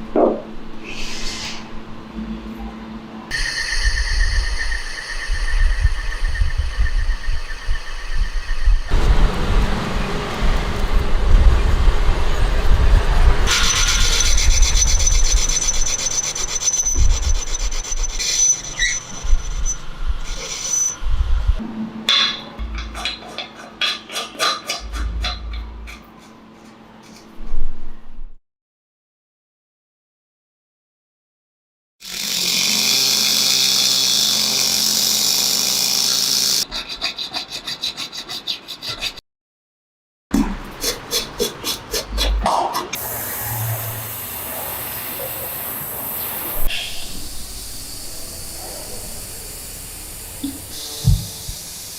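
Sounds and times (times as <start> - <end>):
high ringing tone: 2.1 - 8.9
low motor hum: 2.1 - 13.5
loud hissing tool: 3.3 - 9.2, 32.0 - 36.6, 43.0 - 51.9
abrasive rasping on metal: 36.6 - 39.2.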